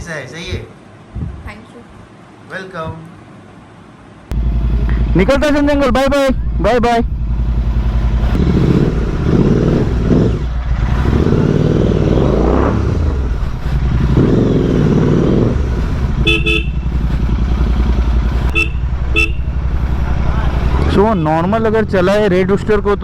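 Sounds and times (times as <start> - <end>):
motorcycle engine revving: 4.3 - 23.0
vehicle horn beeps: 16.2 - 16.9, 18.5 - 19.6.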